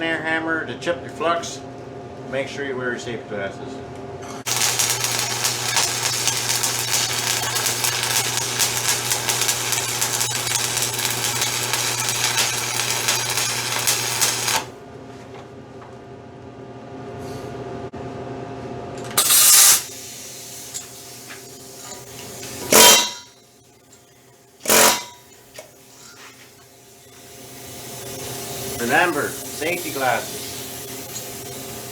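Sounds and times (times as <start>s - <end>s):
short loud air hiss: 19.2s - 21.5s
pneumatic air hammer rattling: 19.2s - 23.3s, 24.6s - 26.7s, 27.3s - 31.9s.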